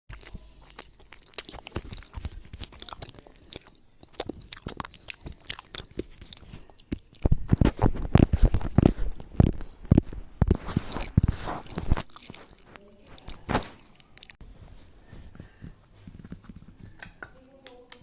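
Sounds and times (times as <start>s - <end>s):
crunching and crackling: 0.1s - 14.5s.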